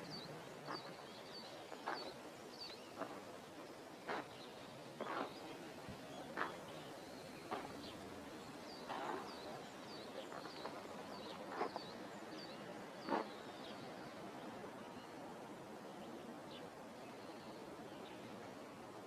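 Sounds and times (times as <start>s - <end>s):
small birds chirping: 0.0s - 13.9s
faint outdoor background noise: 0.0s - 19.0s.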